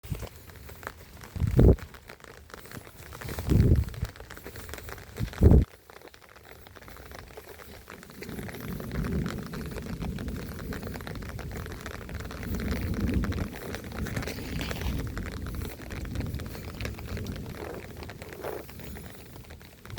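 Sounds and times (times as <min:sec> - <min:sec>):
heavy footsteps: 0:00.0 - 0:05.7
rain patter: 0:00.0 - 0:19.9.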